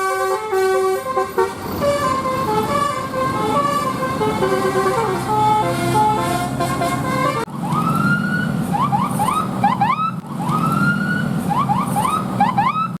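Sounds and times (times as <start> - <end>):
multi-tone bus horn: 0.0 - 7.5
low engine drone: 0.7 - 12.8.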